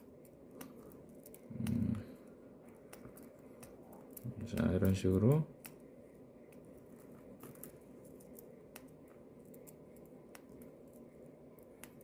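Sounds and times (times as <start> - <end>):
wires being peeled apart: 0.0 - 2.1, 6.5 - 12.0
low room hum: 0.0 - 12.0.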